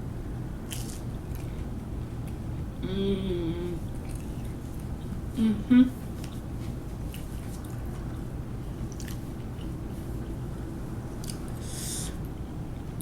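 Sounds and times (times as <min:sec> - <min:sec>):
steady low hum: 0:00.0 - 0:13.0
person chewing: 0:00.7 - 0:01.7.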